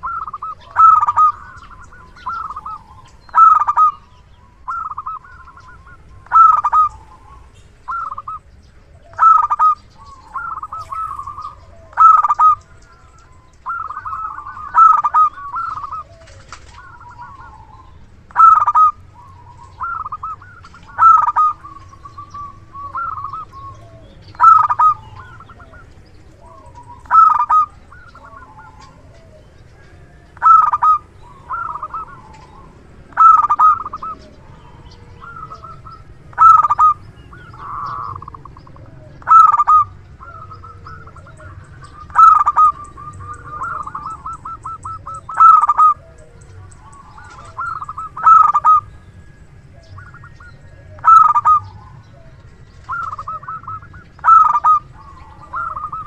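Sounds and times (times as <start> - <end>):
dove cooing: 0.0 - 56.0.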